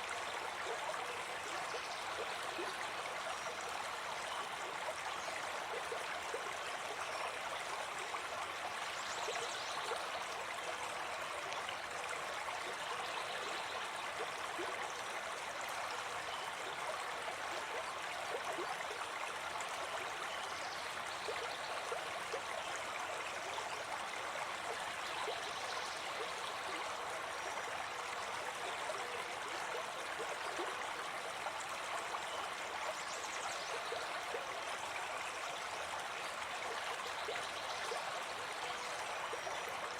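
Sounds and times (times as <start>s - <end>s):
stream running over rocks: 0.0s - 39.9s.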